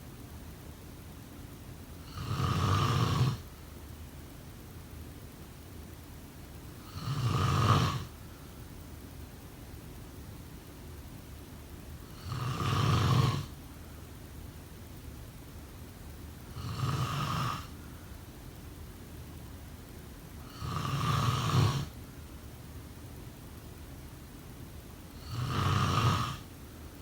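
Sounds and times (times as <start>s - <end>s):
faint steady hiss: 0.0s - 27.0s
person snoring: 2.1s - 3.4s, 6.8s - 8.1s, 12.1s - 13.5s, 16.5s - 17.8s, 20.5s - 22.0s, 25.2s - 26.4s.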